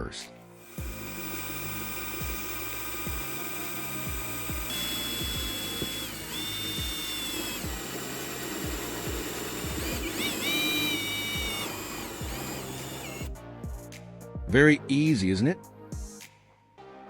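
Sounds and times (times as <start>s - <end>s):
electric drill cutting plastic: 0.4s - 13.3s
background music with beat: 13.3s - 17.0s.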